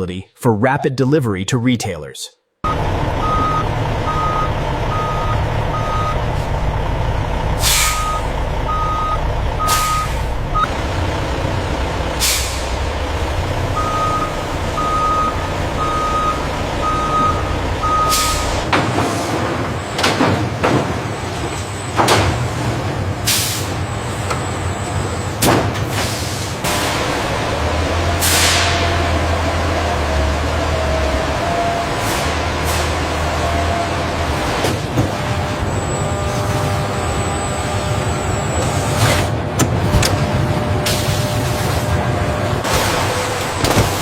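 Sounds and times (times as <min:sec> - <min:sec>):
reversing alarm beeping: 0:02.6 - 0:06.4, 0:07.6 - 0:10.7, 0:13.7 - 0:18.6, 0:35.3 - 0:39.1
diesel truck engine running: 0:02.6 - 0:44.0
air brake hisses: 0:07.6 - 0:08.2, 0:12.2 - 0:12.7, 0:18.1 - 0:18.6, 0:23.3 - 0:23.8, 0:28.2 - 0:28.8.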